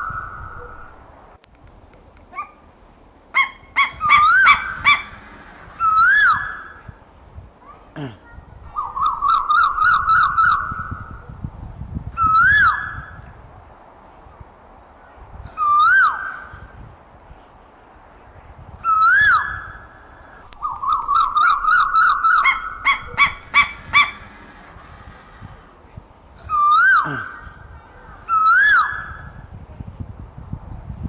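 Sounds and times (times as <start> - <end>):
bird calling: 0.0 - 1.1, 2.2 - 7.0, 7.7 - 11.4, 12.2 - 13.3, 15.1 - 16.8, 17.4 - 29.4.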